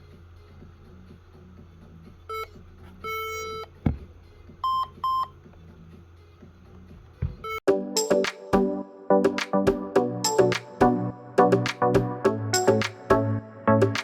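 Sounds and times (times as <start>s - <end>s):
music: 0.0s - 14.0s
laptop warning beeps: 2.3s - 3.7s, 4.6s - 5.3s
dull thumps: 3.8s - 4.2s, 6.9s - 7.6s.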